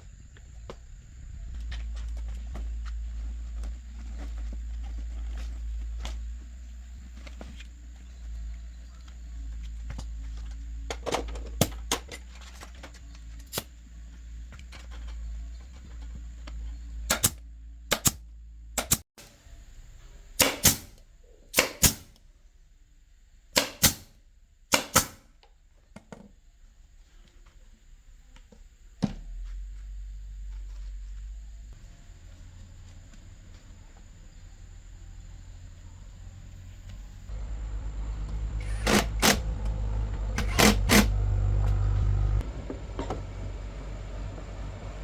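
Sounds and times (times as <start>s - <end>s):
low steady hum: 0.0s - 25.7s, 26.3s - 45.0s
sharp clicks and knocks: 38.3s - 39.8s, 40.4s - 41.8s.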